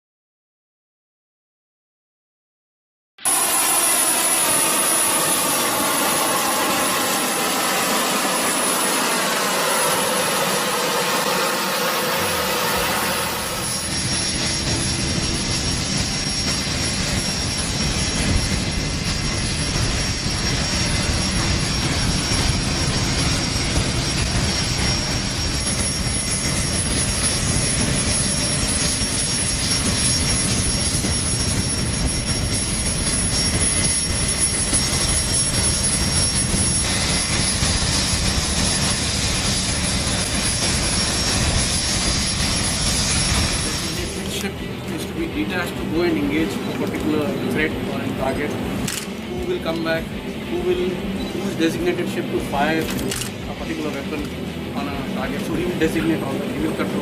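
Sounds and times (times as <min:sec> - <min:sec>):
jet engine whine and roar: 0:03.2 - 0:57.0.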